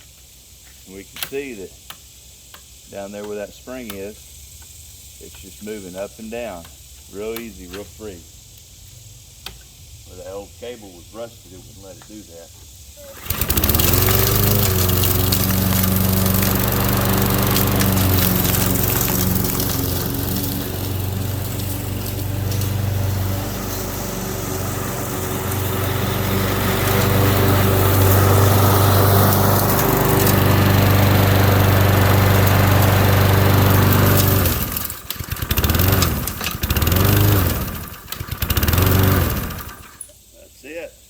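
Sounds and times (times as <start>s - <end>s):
lawn mower engine running: 13.0s - 40.0s.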